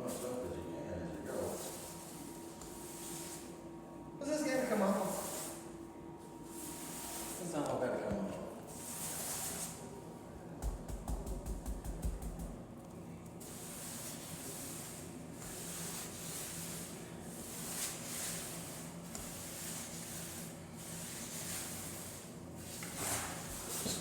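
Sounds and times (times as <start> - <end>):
grout float scraping tile: 8.7 - 9.8, 13.5 - 24.0.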